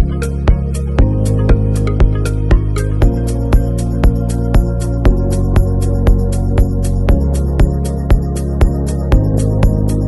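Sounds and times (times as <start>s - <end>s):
electronic music with steady beat: 0.0s - 10.0s
kick drum: 0.0s - 10.0s
sustained bass notes: 0.0s - 10.0s.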